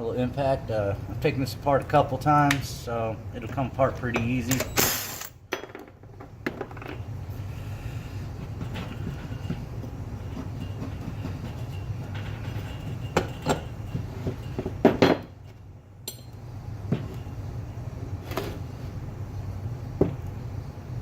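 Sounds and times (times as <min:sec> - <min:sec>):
steady low hum: 0:00.0 - 0:21.0
metal tools knocking and clinking: 0:04.1 - 0:06.0, 0:10.7 - 0:15.3, 0:16.0 - 0:16.4.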